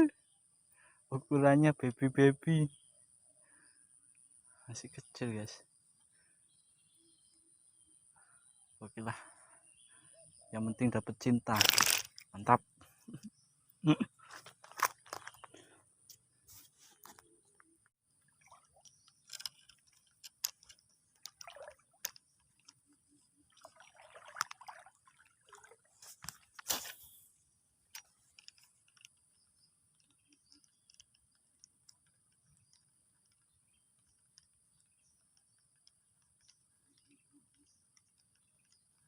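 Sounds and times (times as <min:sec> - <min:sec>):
clicks and rustles: 0:11.4 - 0:12.5, 0:14.2 - 0:17.9, 0:18.7 - 0:23.3, 0:26.0 - 0:27.2, 0:27.9 - 0:39.0
small water splashes: 0:18.0 - 0:27.1.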